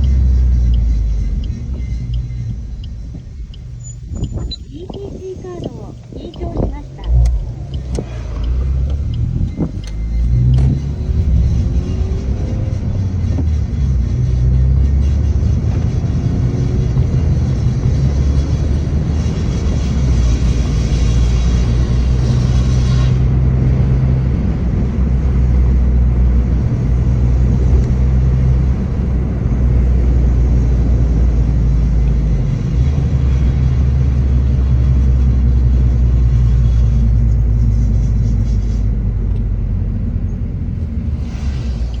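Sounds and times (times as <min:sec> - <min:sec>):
abnormal car noise: 0:00.0 - 0:42.0
car engine drone: 0:00.0 - 0:42.0
road noise: 0:00.0 - 0:42.0.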